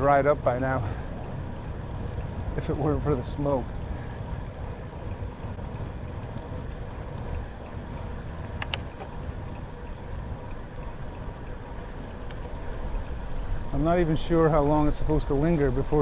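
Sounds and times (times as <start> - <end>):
bicycle tyre and wind rumble: 0.0 - 16.0
sharp clicks: 8.5 - 9.0.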